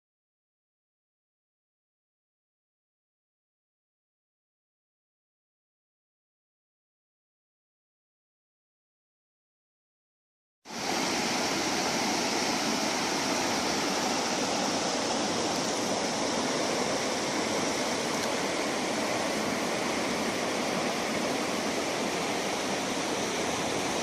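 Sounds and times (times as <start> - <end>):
fast-flowing river rushing: 10.7 - 24.0.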